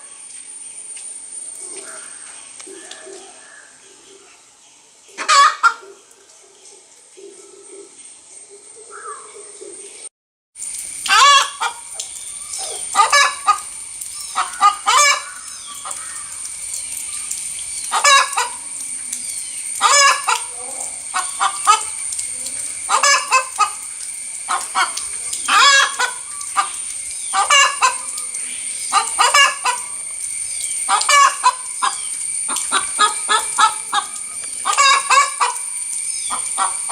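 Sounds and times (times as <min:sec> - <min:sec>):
hen cackling: 0:05.2 - 0:06.0, 0:11.0 - 0:36.9.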